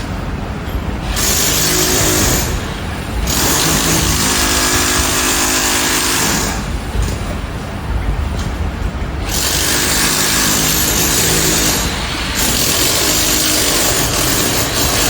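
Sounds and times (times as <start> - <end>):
breaker hammering concrete: 1.0 - 7.0, 9.2 - 15.0.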